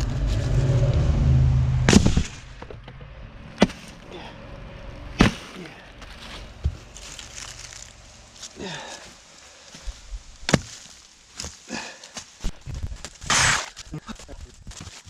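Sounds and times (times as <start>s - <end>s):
engine running: 0.0s - 9.0s.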